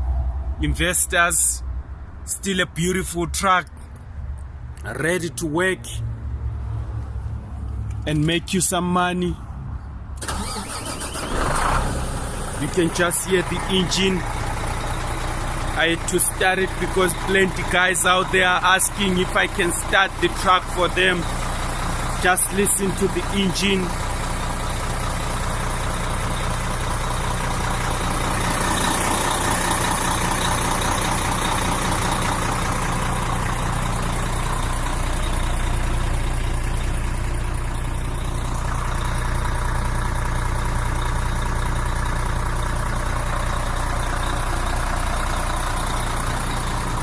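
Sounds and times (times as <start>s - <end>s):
truck diesel engine idling: 10.2s - 47.0s.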